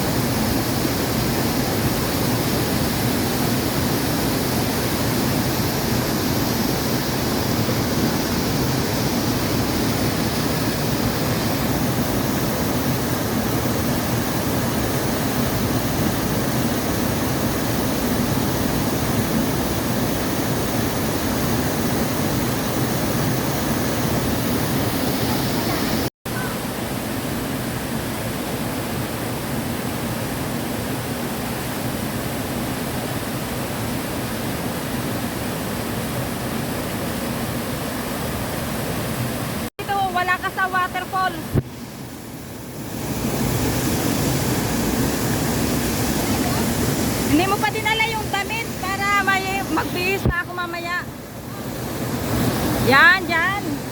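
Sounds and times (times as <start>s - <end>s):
waterfall rushing: 0.0s - 53.9s.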